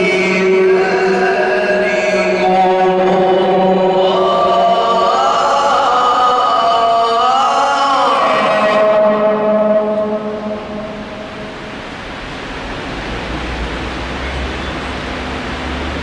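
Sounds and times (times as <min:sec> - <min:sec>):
man chanting melodically: 0:00.0 - 0:11.5.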